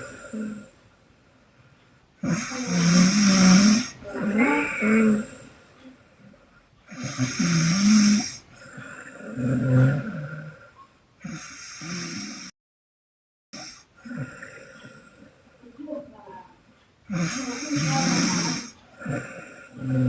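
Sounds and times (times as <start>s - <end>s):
woman snoring loudly: 0.0s - 0.8s, 2.2s - 5.6s, 6.9s - 12.6s, 13.6s - 15.3s, 17.1s - 20.0s.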